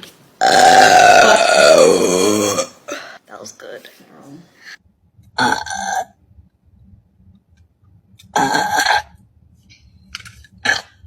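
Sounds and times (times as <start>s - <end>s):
woman burping: 0.4s - 3.1s, 8.4s - 9.1s.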